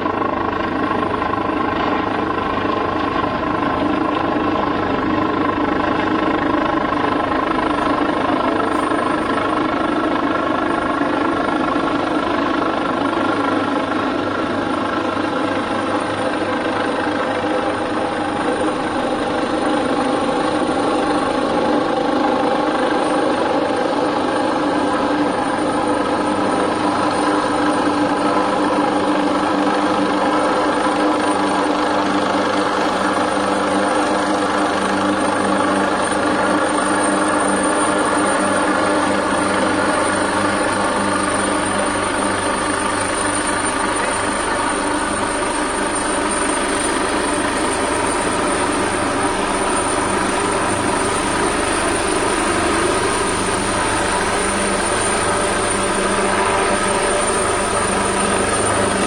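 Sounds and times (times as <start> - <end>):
thin high whine: 14.9 - 59.0.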